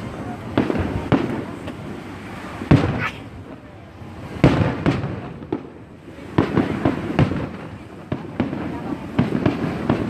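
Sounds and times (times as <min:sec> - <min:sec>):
fireworks bursting with booms: 0:00.5 - 0:01.6, 0:02.6 - 0:10.0
small firework bang: 0:02.7 - 0:03.2.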